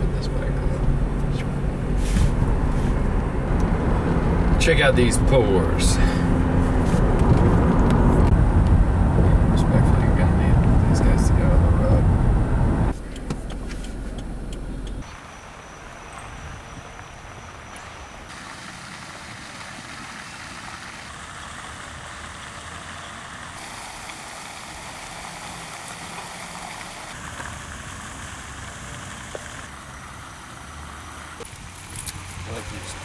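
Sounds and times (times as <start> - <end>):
car road and engine noise: 0.0 - 33.0.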